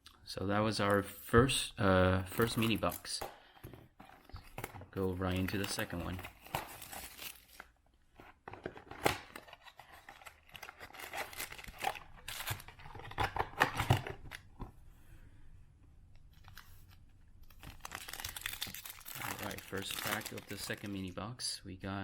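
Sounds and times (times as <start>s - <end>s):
foil packaging tearing and crinkling: 5.2s - 7.7s, 9.4s - 13.2s, 17.5s - 21.1s.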